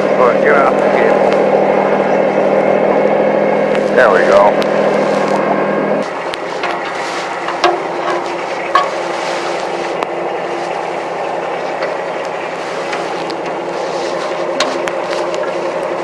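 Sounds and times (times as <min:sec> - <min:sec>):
tractor engine running: 0:00.0 - 0:16.0
sharp metallic knocks: 0:06.6 - 0:09.1.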